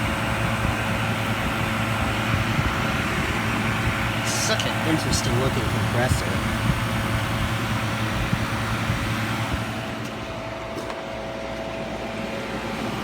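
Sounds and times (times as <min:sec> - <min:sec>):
window air conditioner humming: 0:00.0 - 0:13.0.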